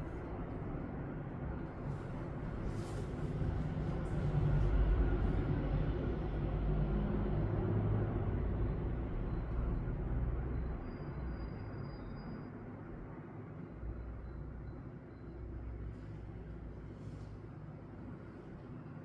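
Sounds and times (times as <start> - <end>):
low steady rumble: 0.0 - 10.8.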